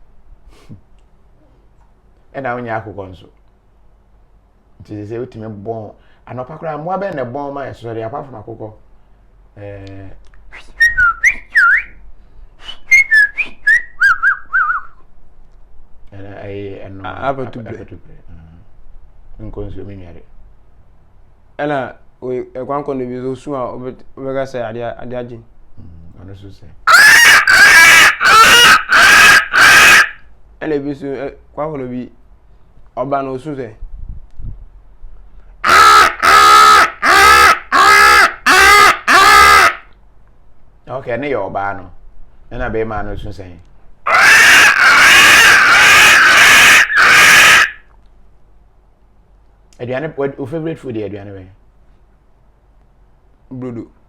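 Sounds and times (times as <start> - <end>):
person whistling bird calls: 10.5 - 12.0, 12.6 - 15.0
person imitating crow caws: 26.9 - 30.2, 35.6 - 39.9, 44.1 - 47.9.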